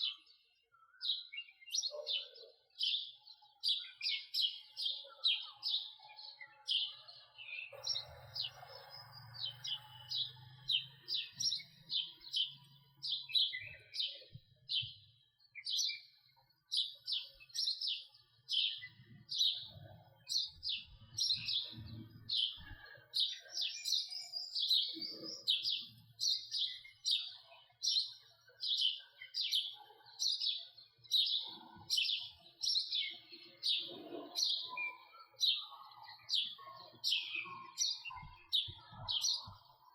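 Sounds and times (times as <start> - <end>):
sparrow chirping: 0.0 - 39.9.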